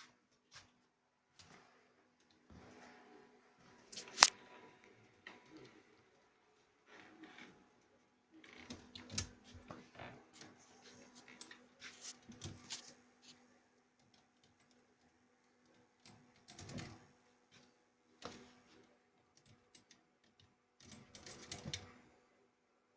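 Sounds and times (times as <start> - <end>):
claws scratching window screen: 10.9 - 13.4.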